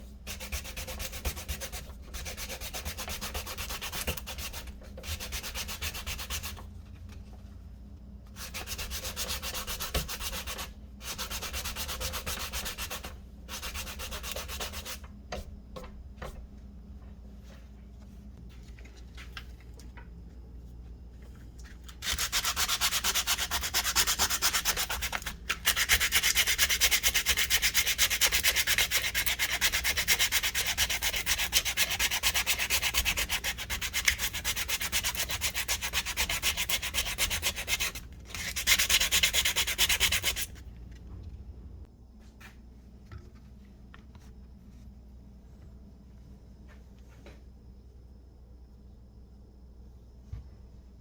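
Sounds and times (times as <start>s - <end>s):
sanding scratching: 0.3s - 6.6s, 8.4s - 15.0s, 22.0s - 40.5s.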